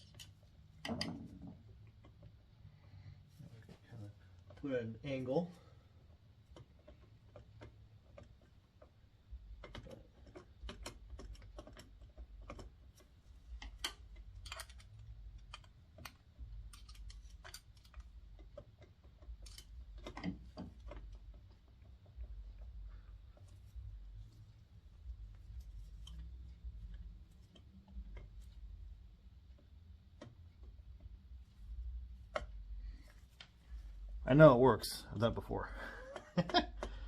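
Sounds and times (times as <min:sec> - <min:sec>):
metallic clicks and knocks of gears: 0:06.5 - 0:22.9.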